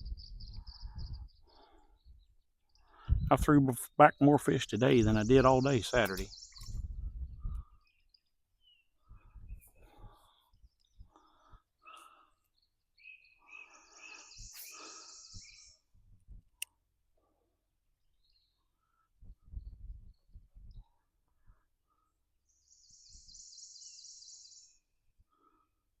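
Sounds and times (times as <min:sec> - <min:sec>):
birds chirping and singing: 0:00.0 - 0:15.9, 0:22.0 - 0:25.6.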